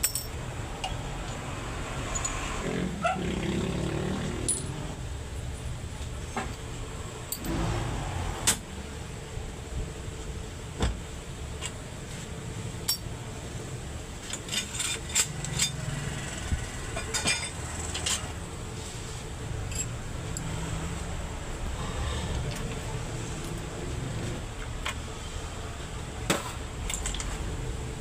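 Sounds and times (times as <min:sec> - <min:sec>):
metallic clinks and taps: 0:00.0 - 0:01.4, 0:04.4 - 0:04.8.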